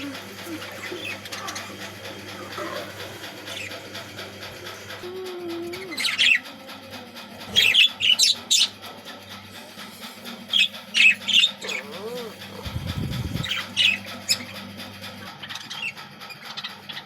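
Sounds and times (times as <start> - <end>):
budgerigars chirping: 3.5 - 3.8, 7.5 - 8.7, 10.5 - 12.2, 12.8 - 14.5.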